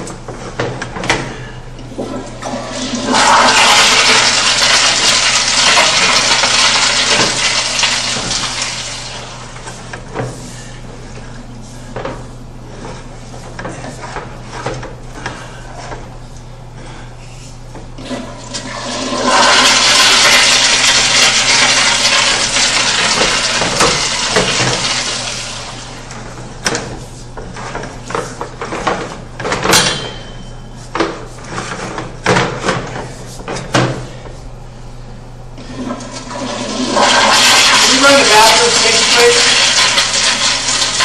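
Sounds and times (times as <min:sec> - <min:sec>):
toilet flushing: 0:01.8 - 0:10.7, 0:18.0 - 0:29.7, 0:35.6 - 0:41.0.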